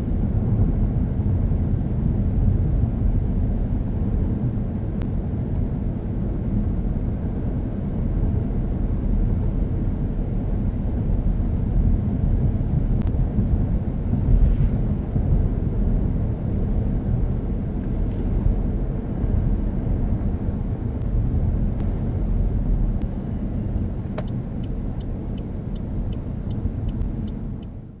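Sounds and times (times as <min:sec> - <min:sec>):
car engine and tyre rumble: 0:00.0 - 0:28.0
turn signal ticking: 0:23.8 - 0:27.8.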